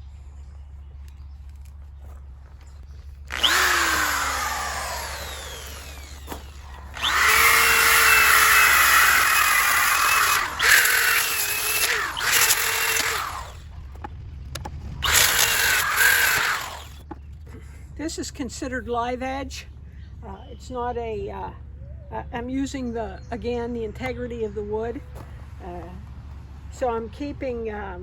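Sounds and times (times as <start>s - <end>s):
electric sander running on wood: 3.2s - 14.0s, 15.0s - 17.0s.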